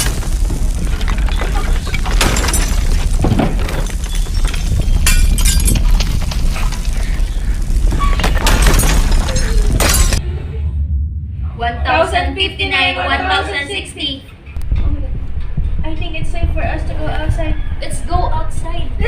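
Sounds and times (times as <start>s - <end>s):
glass shattering and objects breaking: 0.0s - 10.2s
deep earthquake rumble: 0.0s - 19.0s.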